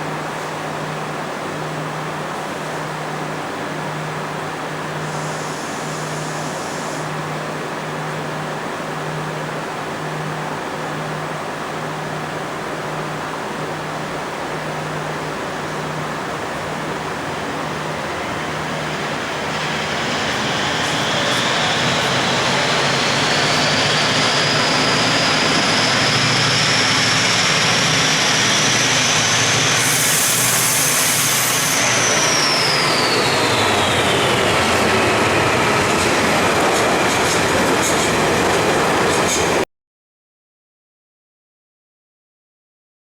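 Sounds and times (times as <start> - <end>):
high-pitched train whine: 0.0 - 39.6
train rail rumble: 0.0 - 39.6.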